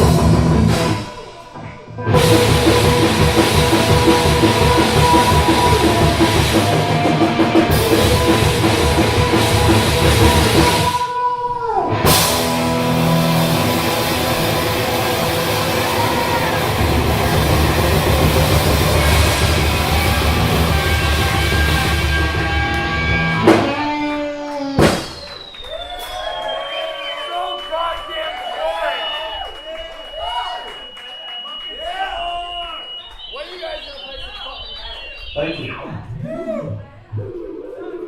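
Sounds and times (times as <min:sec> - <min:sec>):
live rock band: 0:00.0 - 0:01.4, 0:02.0 - 0:11.1, 0:11.8 - 0:26.1.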